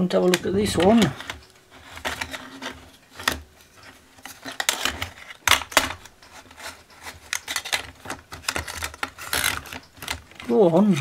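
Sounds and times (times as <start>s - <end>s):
rubbing and scraping handling: 0.2s - 11.0s.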